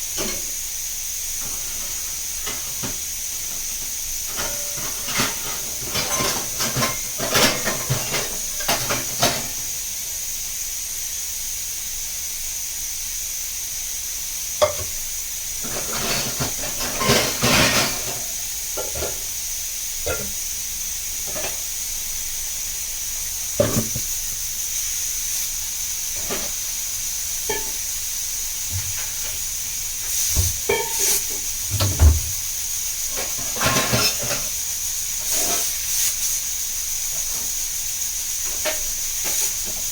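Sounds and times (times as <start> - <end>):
food sizzling in a pan: 0.0 - 39.9
spoon scraping a pan: 1.4 - 9.7, 15.6 - 19.3, 20.1 - 20.4, 26.2 - 26.6, 27.5 - 27.8, 30.1 - 31.6, 33.1 - 34.6, 35.2 - 36.3.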